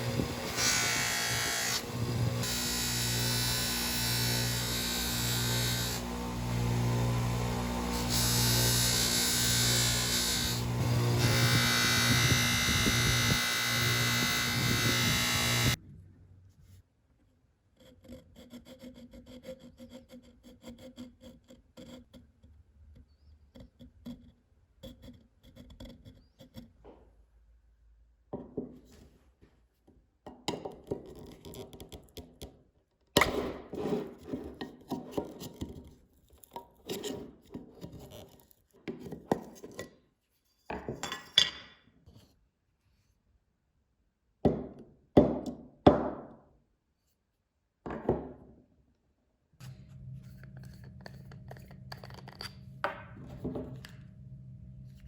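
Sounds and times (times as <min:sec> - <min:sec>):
power tool running: 0:00.0 - 0:15.8.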